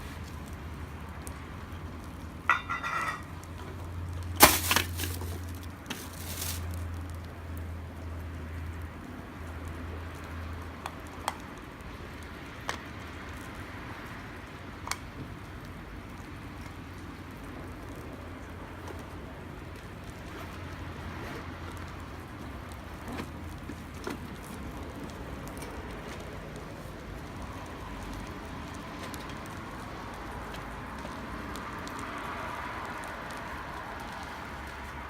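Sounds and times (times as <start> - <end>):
campfire crackling and popping: 0.3 - 13.6, 21.7 - 35.0.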